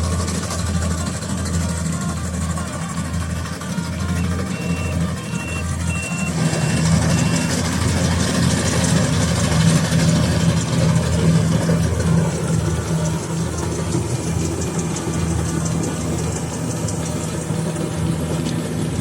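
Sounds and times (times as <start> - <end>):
reversing alarm beeping: 0.0 - 9.3
diesel engine running: 0.0 - 19.0.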